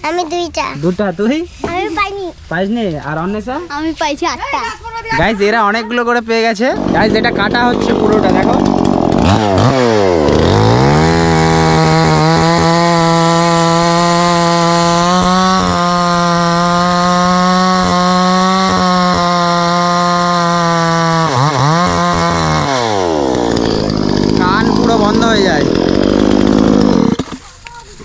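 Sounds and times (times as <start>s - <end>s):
chainsaw cutting through tree trunk: 6.7s - 28.0s.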